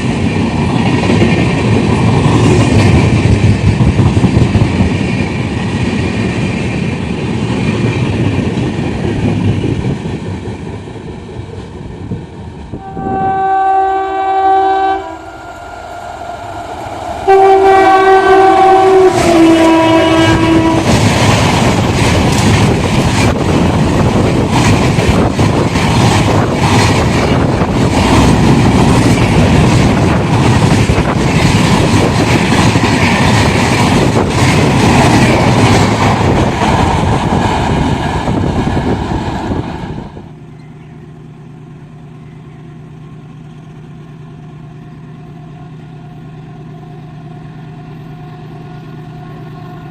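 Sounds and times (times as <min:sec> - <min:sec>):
train rushing past: 0:00.0 - 0:49.9
locomotive horn blasts: 0:12.8 - 0:21.0, 0:48.0 - 0:49.9.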